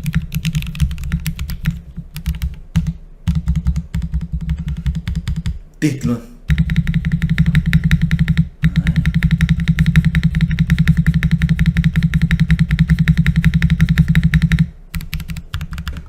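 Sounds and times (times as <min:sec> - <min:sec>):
mechanical keyboard clacking: 0:00.0 - 0:05.6, 0:06.5 - 0:16.0.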